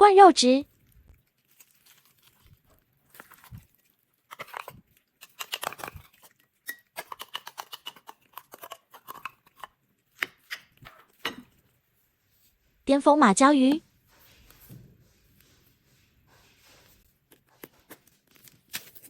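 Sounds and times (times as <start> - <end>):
spoon scraping cat food tin: 3.2 - 11.7.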